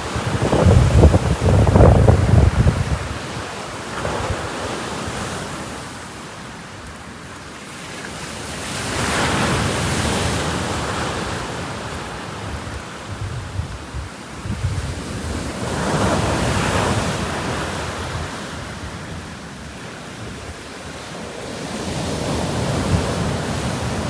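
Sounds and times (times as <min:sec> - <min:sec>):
wind buffeting microphone: 0:00.0 - 0:05.6, 0:09.4 - 0:18.7
ocean waves washing onto beach: 0:00.0 - 0:24.0.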